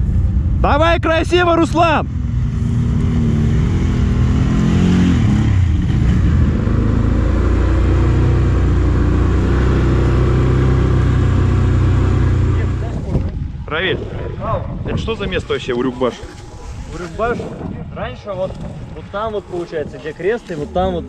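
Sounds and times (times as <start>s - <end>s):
atv engine revving: 2.1s - 14.4s.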